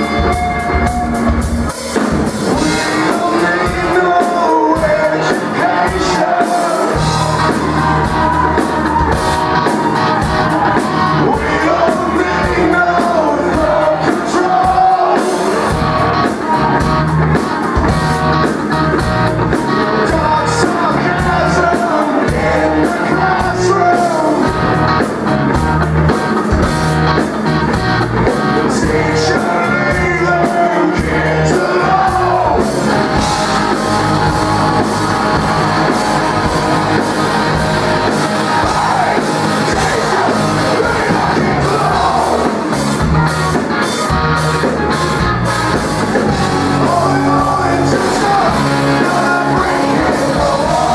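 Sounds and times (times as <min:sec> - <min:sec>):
live rock band playing: 0:00.0 - 0:50.9
person singing: 0:02.5 - 0:09.0, 0:11.1 - 0:16.7, 0:19.5 - 0:24.6, 0:38.1 - 0:42.8, 0:46.2 - 0:50.9.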